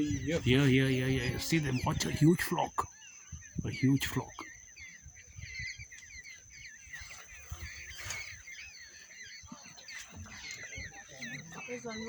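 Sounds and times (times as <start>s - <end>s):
flock of parrots squawking: 2.9s - 12.0s.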